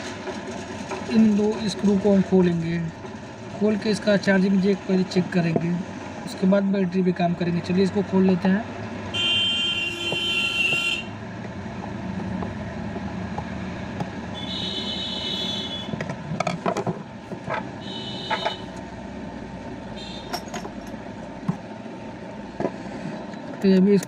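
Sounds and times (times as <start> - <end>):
steady background rumble: 10.0 - 23.8.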